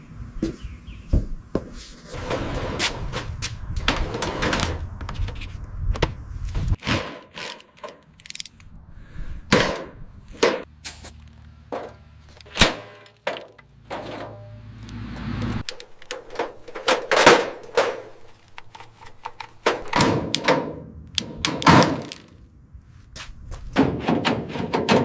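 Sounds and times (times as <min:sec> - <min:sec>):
low rumble: 0:14.3 - 0:15.7
knocks and bangs on metal: 0:23.7 - 0:25.0.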